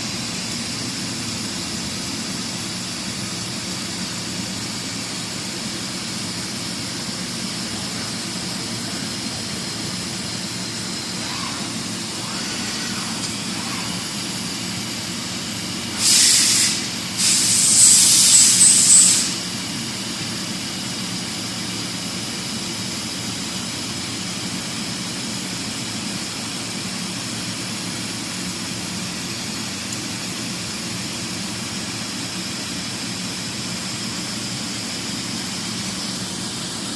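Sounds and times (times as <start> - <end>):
boring mill humming: 0.0 - 22.0
loud hiss: 10.5 - 20.4.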